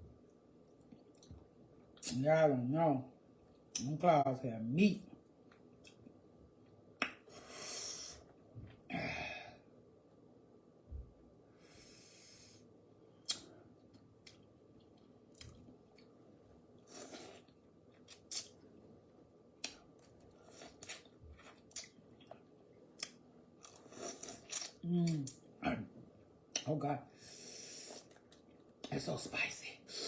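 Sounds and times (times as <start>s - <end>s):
person sniffing: 7.3s - 8.2s.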